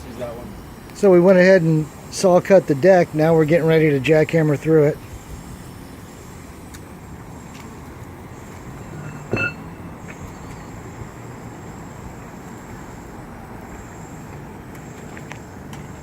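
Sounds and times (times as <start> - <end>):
metallic clink: 9.0 - 9.6.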